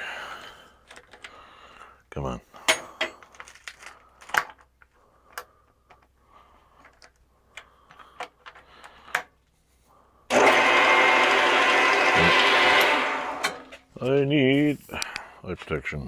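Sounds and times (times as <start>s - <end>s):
metal tools clicking and knocking: 2.6s - 3.6s
lathe motor and gear whine: 10.3s - 13.7s.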